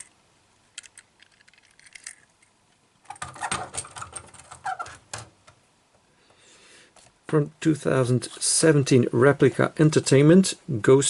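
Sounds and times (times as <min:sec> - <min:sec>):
toy car clicking on plastic: 0:00.7 - 0:02.5.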